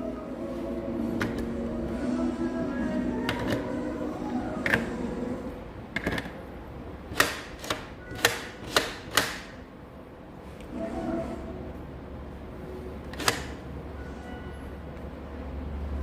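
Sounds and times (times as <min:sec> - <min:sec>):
faint background music: 0:00.0 - 0:06.2, 0:10.7 - 0:16.0.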